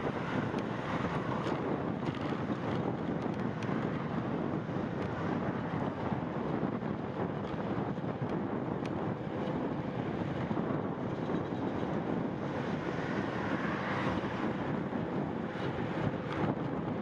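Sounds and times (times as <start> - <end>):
road noise: 0.0 - 17.0
wind rush on microphone: 0.0 - 17.0.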